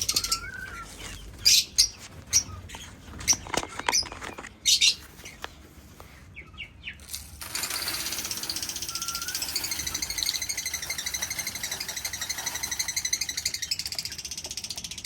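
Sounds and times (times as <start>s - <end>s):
parrots chattering: 0.0s - 5.4s, 8.5s - 15.0s
parrots chirping and calling: 0.0s - 5.4s, 8.5s - 15.0s
wing flutter: 7.3s - 14.3s.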